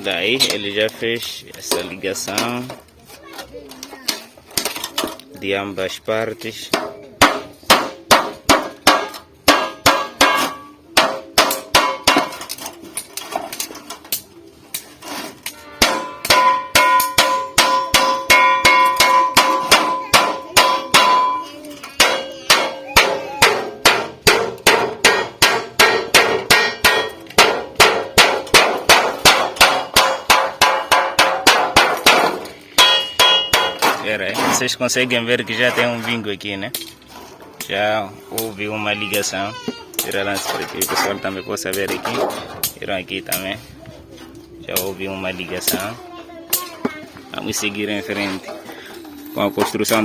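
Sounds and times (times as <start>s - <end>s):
hammer striking sheet metal: 6.7s - 12.6s, 15.4s - 34.6s.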